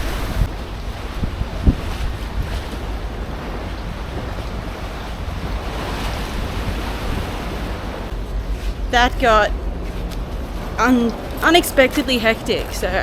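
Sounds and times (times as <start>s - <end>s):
waves and surf rushing: 0.0s - 13.0s
wind buffeting microphone: 0.0s - 13.0s.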